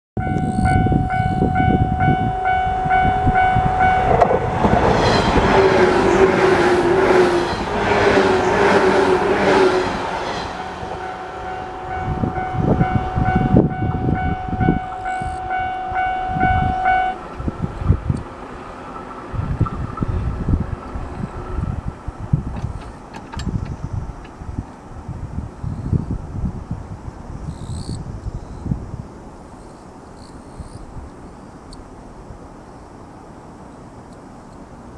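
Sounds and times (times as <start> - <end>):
electric train passing: 0.2 - 25.6.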